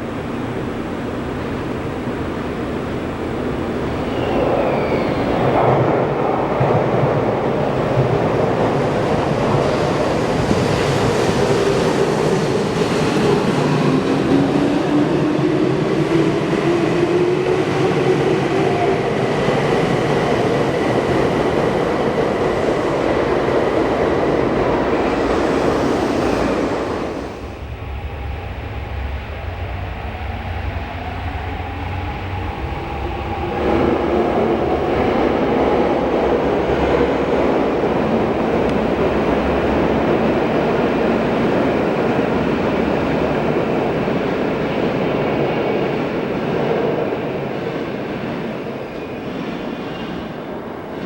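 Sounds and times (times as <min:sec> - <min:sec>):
wheel and rail noise: 0:08.6 - 0:28.5
train motor whine rising: 0:20.4 - 0:27.8.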